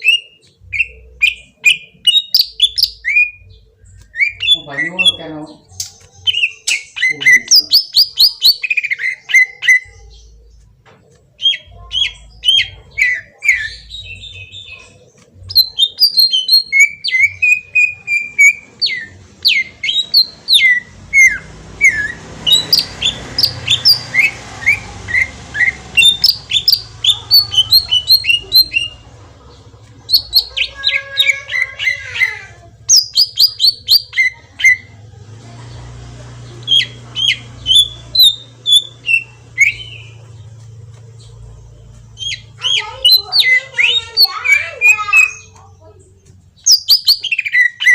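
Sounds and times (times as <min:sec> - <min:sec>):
bird singing whistled notes: 0:00.0 - 0:10.4, 0:15.5 - 0:29.0, 0:32.9 - 0:34.9, 0:36.6 - 0:40.2, 0:46.6 - 0:47.9.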